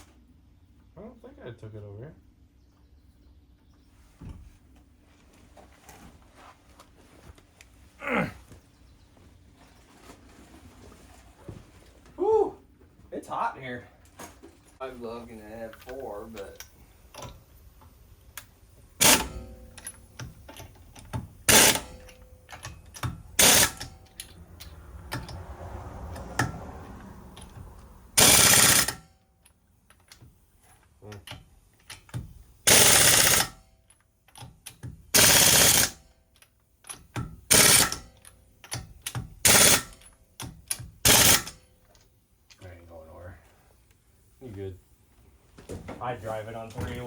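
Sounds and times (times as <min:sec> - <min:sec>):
impact wrench rattling: 0:19.0 - 0:25.4, 0:27.4 - 0:29.0, 0:31.3 - 0:33.6, 0:34.2 - 0:41.6.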